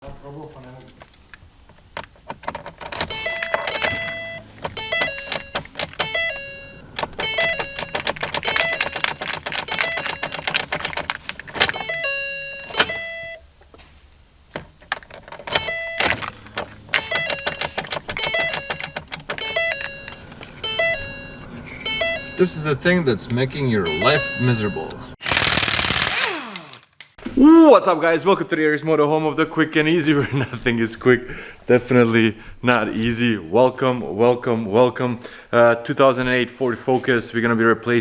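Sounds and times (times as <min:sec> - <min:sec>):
car keys jangling: 0:00.8 - 0:13.4, 0:14.5 - 0:26.7
short electronic tones: 0:03.1 - 0:10.5, 0:11.8 - 0:13.4, 0:15.5 - 0:25.5.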